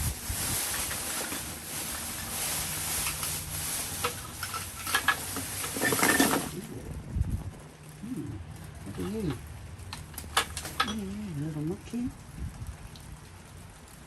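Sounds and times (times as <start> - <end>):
plastic bags crinkling: 0.0 - 6.7.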